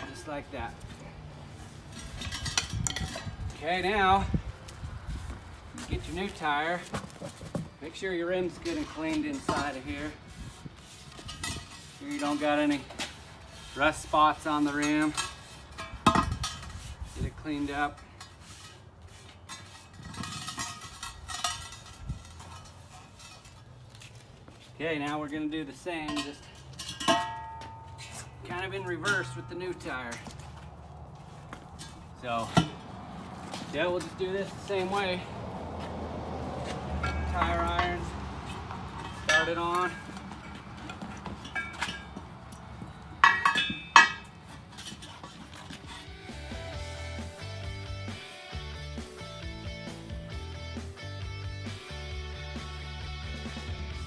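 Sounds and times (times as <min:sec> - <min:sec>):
scraping and rubbing on metal: 0:00.0 - 0:04.2, 0:04.9 - 0:24.8, 0:43.2 - 0:46.7
tire irons clinking on wheel rim: 0:00.0 - 0:48.2.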